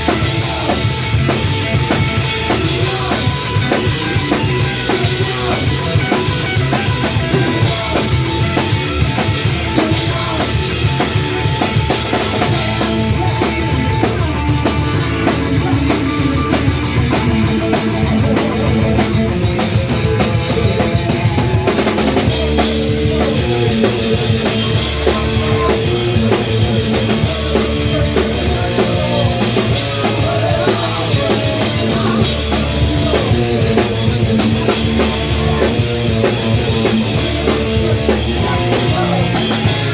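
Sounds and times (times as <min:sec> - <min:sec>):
drum kit: 0:00.0 - 0:39.9
live rock band playing: 0:00.0 - 0:39.9.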